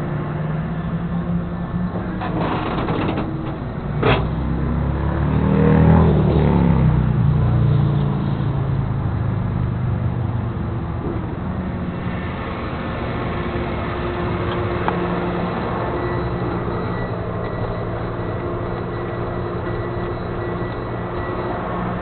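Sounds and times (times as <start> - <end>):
truck engine running: 10.1 - 22.0.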